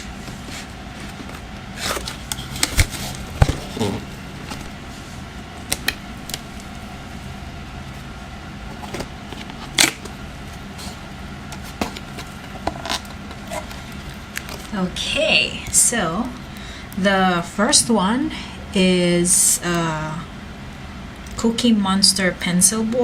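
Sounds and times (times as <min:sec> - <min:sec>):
stationery items rustling and tapping: 0:00.0 - 0:07.3, 0:08.7 - 0:14.8
low room hum: 0:00.0 - 0:23.0.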